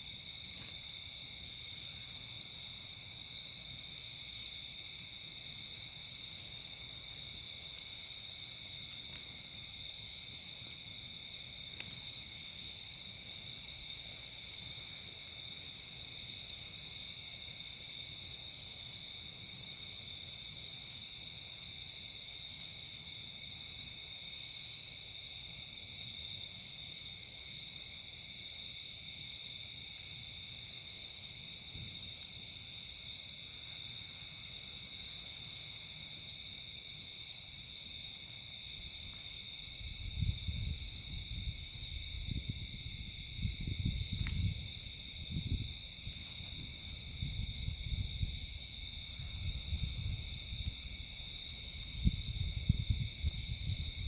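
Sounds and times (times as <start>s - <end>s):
crickets and insects chirring: 0.0s - 54.0s
wind buffeting microphone: 39.8s - 51.2s, 51.8s - 54.0s.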